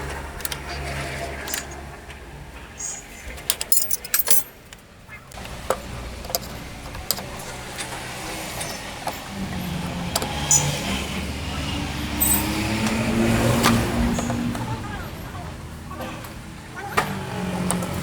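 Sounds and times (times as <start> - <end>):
metal tools clinking: 2.8 - 4.7, 12.2 - 12.8.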